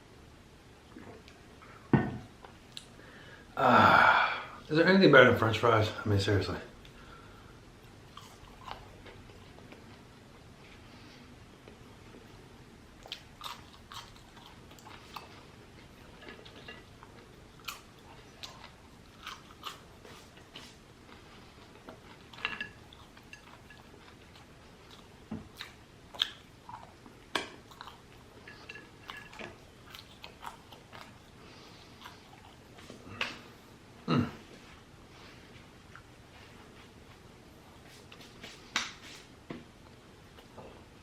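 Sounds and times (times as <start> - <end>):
chewing crunchy fried food: 7.9 - 10.4, 13.0 - 33.1.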